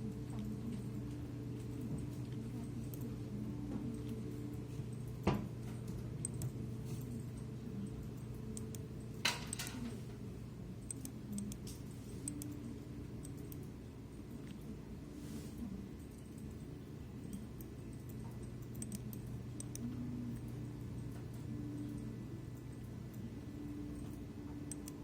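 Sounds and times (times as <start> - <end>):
steady low hum: 0.0 - 25.0
sharp clicks: 18.6 - 20.5.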